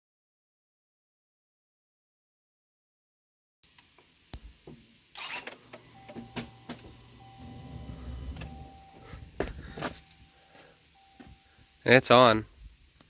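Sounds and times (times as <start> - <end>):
crickets trilling: 3.6 - 13.0
low rumble: 6.9 - 9.8.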